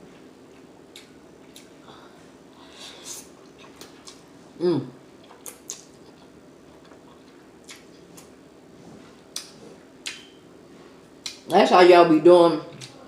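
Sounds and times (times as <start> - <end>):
wet chewing mouth sounds: 5.2 - 8.3.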